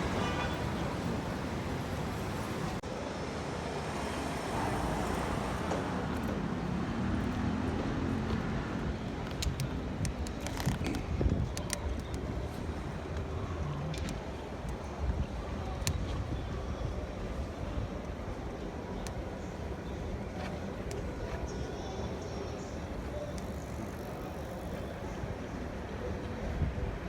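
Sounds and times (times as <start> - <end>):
road and traffic noise: 0.0 - 27.0
wind rumble on microphone: 8.2 - 18.6, 26.3 - 27.0.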